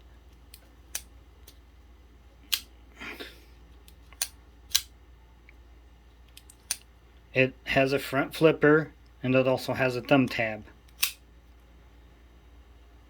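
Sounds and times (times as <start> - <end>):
folding knife metallic clicks: 3.9 - 4.9, 10.9 - 11.2.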